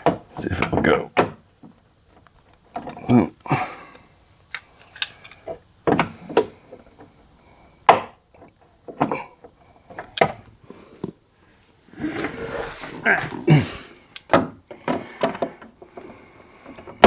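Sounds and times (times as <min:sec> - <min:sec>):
metal clicks and knocks: 0:00.0 - 0:03.0, 0:04.5 - 0:07.2, 0:14.1 - 0:15.8.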